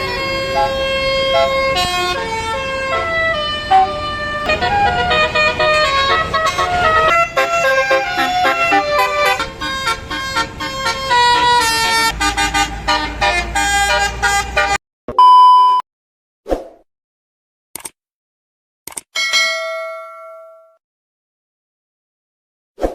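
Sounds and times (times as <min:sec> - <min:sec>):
loud steady horn tone: 0:00.0 - 0:14.8
multi-note bus horn melody: 0:00.0 - 0:14.8.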